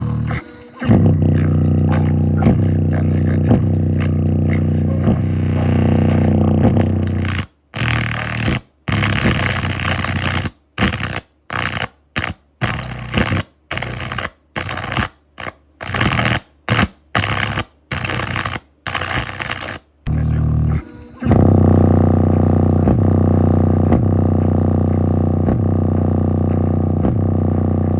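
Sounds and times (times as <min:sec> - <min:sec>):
loud low bass tone: 0:00.0 - 0:11.0, 0:20.1 - 0:27.9
harsh distorted speaker crackling: 0:00.0 - 0:27.9.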